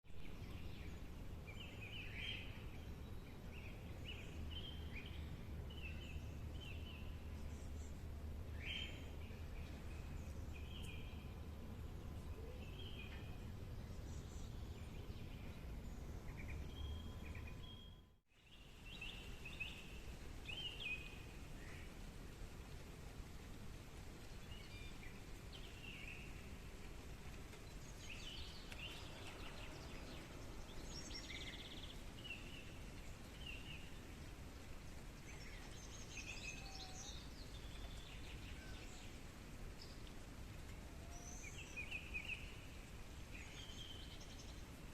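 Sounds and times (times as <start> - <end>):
low background rumble: 0.2 - 20.5
birds chirping: 0.2 - 44.9.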